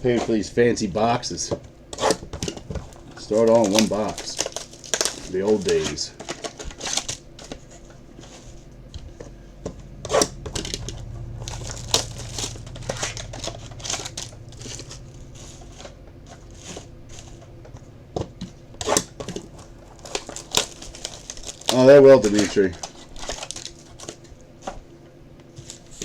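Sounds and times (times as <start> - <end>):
wrappers crinkling and tearing: 2.0 - 8.7, 18.8 - 24.7, 25.6 - 26.0
cards being handled: 2.0 - 9.3.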